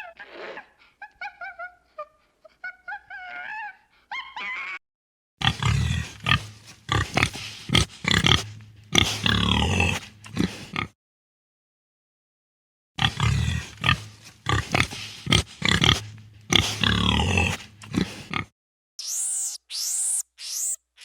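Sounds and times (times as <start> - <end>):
animal grunts and squeals: 0.0 - 4.8
animal whining chirps: 19.0 - 21.0.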